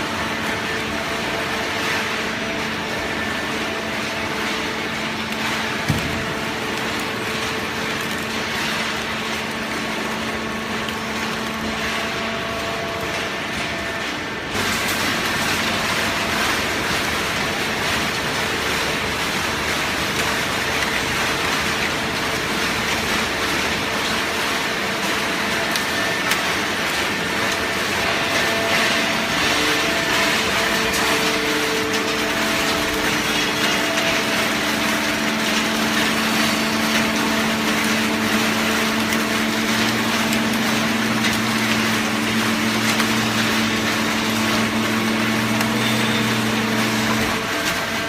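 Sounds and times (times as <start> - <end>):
cardboard baler running: 0.0 - 48.0
baler machine humming: 26.8 - 48.0.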